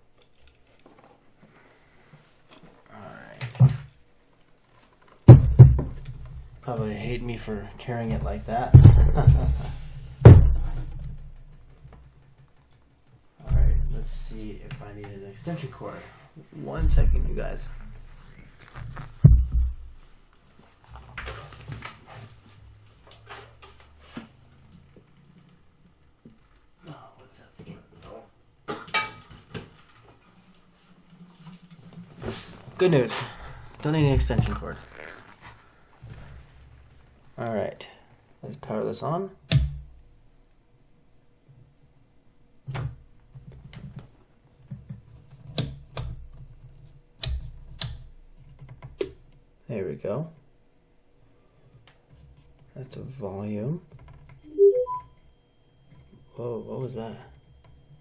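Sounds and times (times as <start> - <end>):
low thump: 5.3 - 6.2, 8.6 - 11.4, 13.5 - 14.0, 16.8 - 17.8, 19.2 - 20.0.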